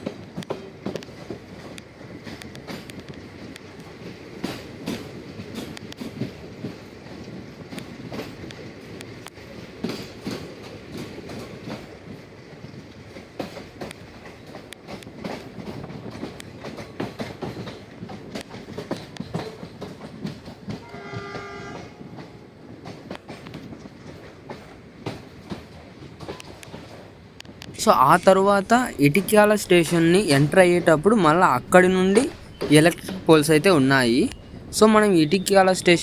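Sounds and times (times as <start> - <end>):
train wheels clattering over rails: 0.0 - 36.0
train horn: 20.8 - 22.4.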